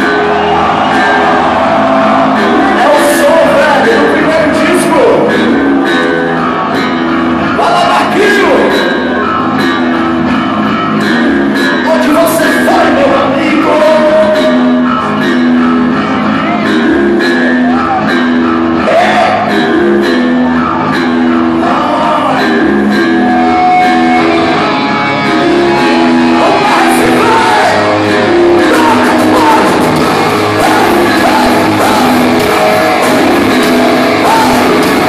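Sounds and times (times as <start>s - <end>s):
electric guitars: 0.0s - 35.0s
rock band playing live: 0.0s - 35.0s
person singing: 26.3s - 35.0s.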